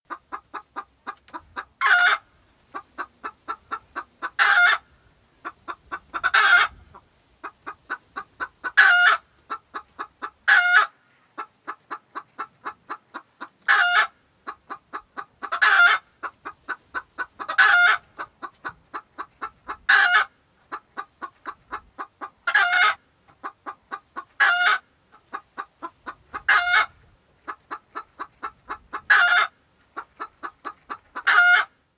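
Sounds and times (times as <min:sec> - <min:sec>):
hen clucking and squawking: 0:00.1 - 0:31.8.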